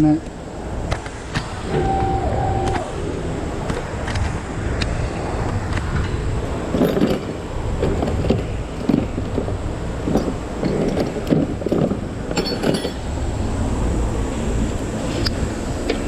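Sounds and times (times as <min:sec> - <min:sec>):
fans rushing: 0:00.2 - 0:10.6.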